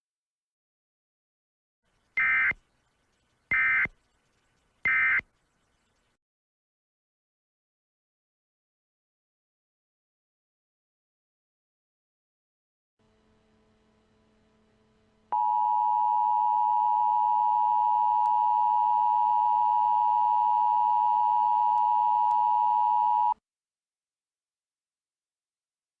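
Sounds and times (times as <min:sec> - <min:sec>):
two-pitch electronic alert tone: 0:04.9 - 0:05.7.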